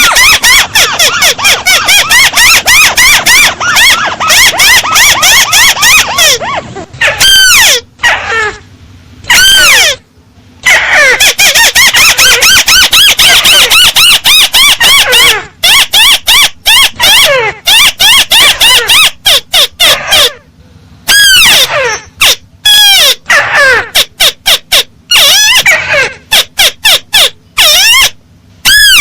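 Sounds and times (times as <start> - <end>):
bird calling high notes: 0.0 - 6.5
crake calling: 0.0 - 8.6.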